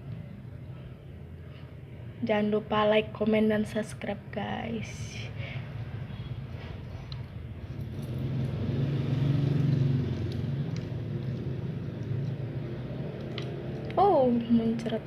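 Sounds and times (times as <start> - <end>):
low vehicle engine rumble: 5.6 - 15.0.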